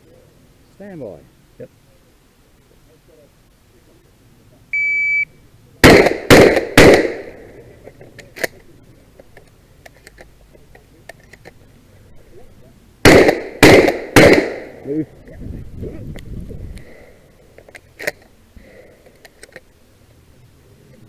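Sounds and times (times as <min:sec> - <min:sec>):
shot timer beep: 0:04.8 - 0:05.3
shotgun shots: 0:05.8 - 0:07.5, 0:13.0 - 0:14.8.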